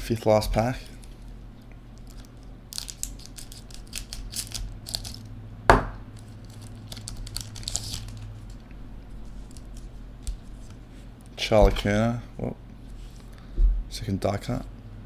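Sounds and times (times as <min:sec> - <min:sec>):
wrapper tearing and crinkling: 0:01.9 - 0:05.3, 0:06.2 - 0:08.6, 0:09.3 - 0:10.5
sharp tap: 0:05.7 - 0:06.0.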